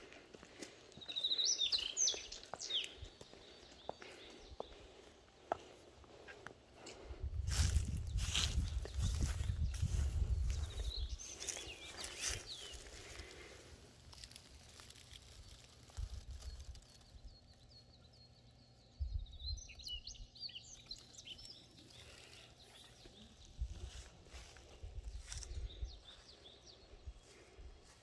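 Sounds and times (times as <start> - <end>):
songbird chirping: 0.0 - 28.0
wind rumble on microphone: 7.1 - 11.5, 19.0 - 20.3.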